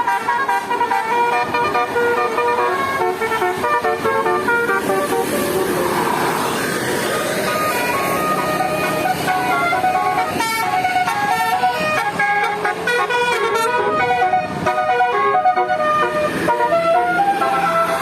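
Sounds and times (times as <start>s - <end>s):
musical bus air horn melody: 0.0s - 18.0s.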